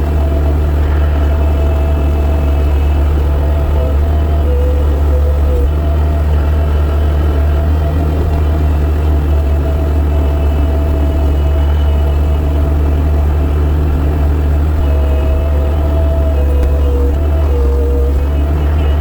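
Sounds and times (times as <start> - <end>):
faint steady tones: 0.0 - 19.0
tractor engine droning: 0.0 - 19.0.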